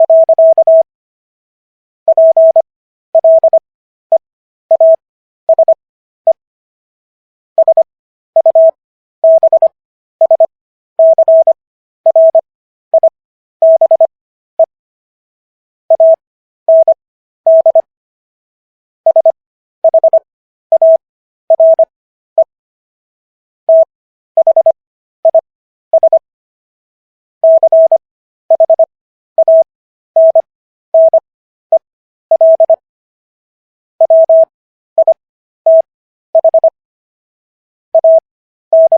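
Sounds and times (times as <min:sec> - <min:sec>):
morse code beeps: 0:00.0 - 0:00.9, 0:02.1 - 0:02.6, 0:03.2 - 0:03.6, 0:04.7 - 0:06.4, 0:07.6 - 0:12.4, 0:13.0 - 0:14.7, 0:15.9 - 0:17.9, 0:19.1 - 0:22.5, 0:23.7 - 0:26.2, 0:27.4 - 0:32.8, 0:34.0 - 0:36.8, 0:38.0 - 0:38.9.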